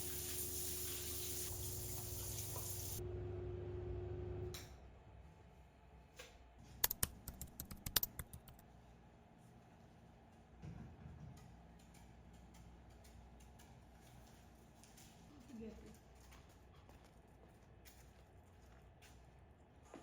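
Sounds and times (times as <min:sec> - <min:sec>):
shower water running: 0:00.0 - 0:03.0.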